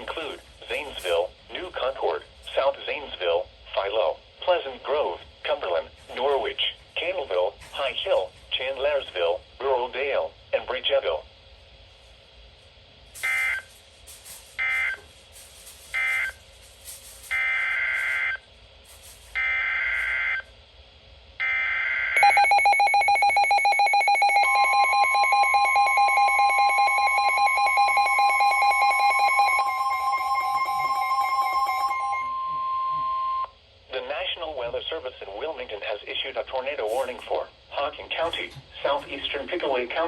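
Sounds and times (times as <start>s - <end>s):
digital data tone bursts: 13.2s - 13.8s, 14.6s - 15.0s, 15.9s - 16.4s, 17.3s - 18.4s, 21.5s - 33.5s
rapidly pulsing electronic alarm: 13.2s - 13.8s, 14.4s - 16.5s, 17.2s - 18.5s, 19.3s - 20.5s, 21.4s - 33.5s
steady warning alarm tone: 13.2s - 18.5s, 19.1s - 20.6s, 21.4s - 33.6s.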